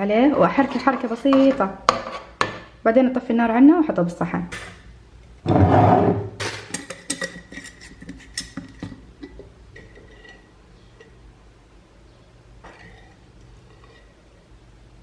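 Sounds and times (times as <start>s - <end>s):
spoon scraping pot of oatmeal: 0.4s - 2.5s, 5.4s - 11.2s, 12.6s - 14.5s
spoon clinking on pot: 6.7s - 11.2s.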